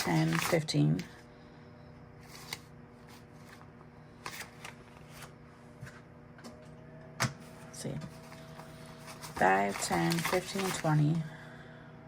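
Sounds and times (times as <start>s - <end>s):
banknotes rustling: 0.0s - 1.1s, 2.2s - 5.3s, 8.1s - 11.2s
faint steady hum: 0.0s - 12.0s.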